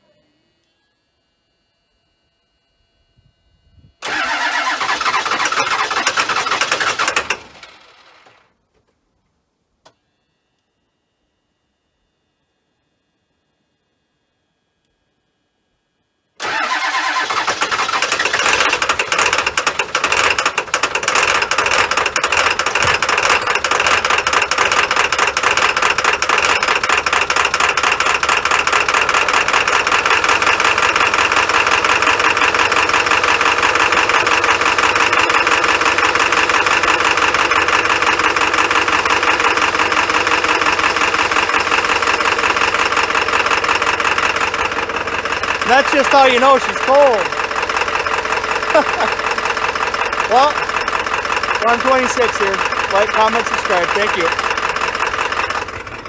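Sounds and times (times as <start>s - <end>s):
diesel engine starting and clattering: 4.0s - 8.5s, 16.4s - 56.0s.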